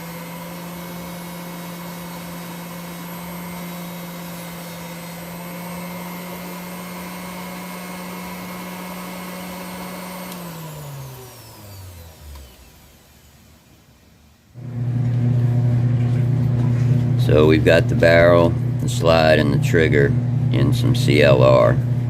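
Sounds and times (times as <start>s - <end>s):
electric motor whirring: 0.0s - 13.7s.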